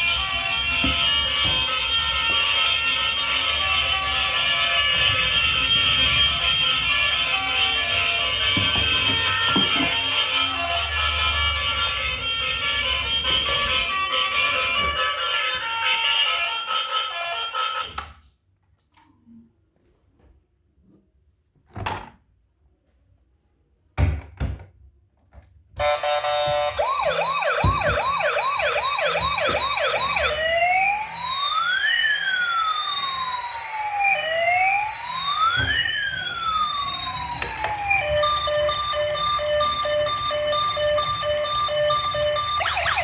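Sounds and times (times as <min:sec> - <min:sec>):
toy electronic siren: 0:00.0 - 0:18.0, 0:25.8 - 0:43.0.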